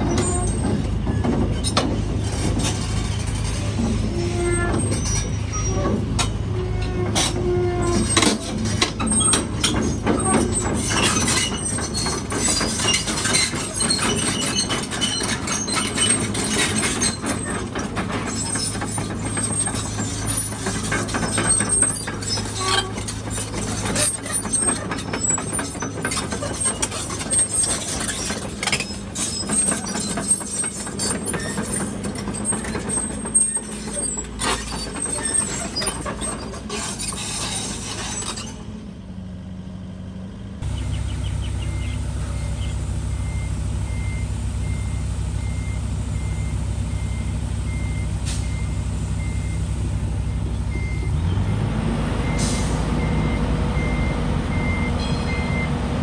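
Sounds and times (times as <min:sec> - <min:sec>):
diesel engine droning: 0:00.0 - 0:56.0
high-pitched squeaks: 0:06.6 - 0:38.7
metallic clanks on rubble: 0:08.0 - 0:38.6.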